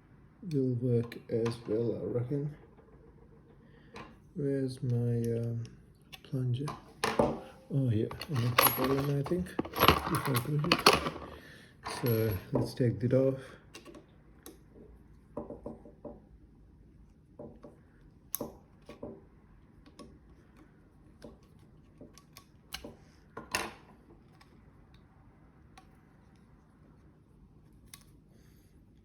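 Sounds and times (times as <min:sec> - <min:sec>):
small metal parts clinking: 0:07.9 - 0:12.7.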